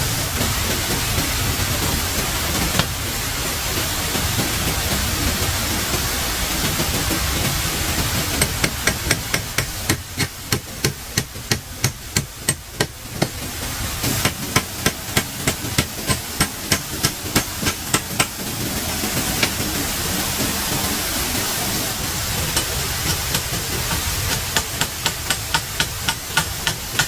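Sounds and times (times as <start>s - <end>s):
steady hissing background: 0.0s - 27.0s
hammer strikes: 2.7s - 3.0s, 8.3s - 13.4s, 14.1s - 18.6s, 19.2s - 19.7s, 22.5s - 27.0s.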